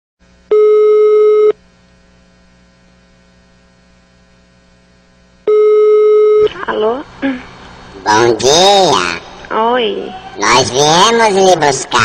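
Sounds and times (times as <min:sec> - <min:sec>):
low line hum: 0:00.2 - 0:12.0
telephone ringback tone: 0:00.5 - 0:01.5, 0:05.5 - 0:06.5.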